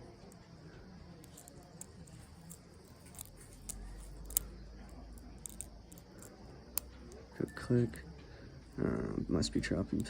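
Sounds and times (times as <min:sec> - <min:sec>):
bobby pins scraping in lock: 0:01.2 - 0:06.4.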